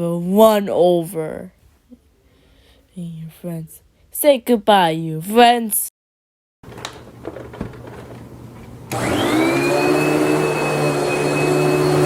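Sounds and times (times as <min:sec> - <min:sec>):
vacuum cleaner motor whine: 0:06.7 - 0:12.0.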